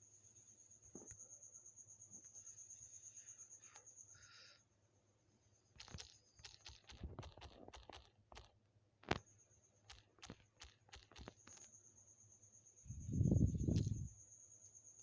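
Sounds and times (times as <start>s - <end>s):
faint irregular clicks and taps: 5.8s - 9.3s, 9.9s - 11.7s.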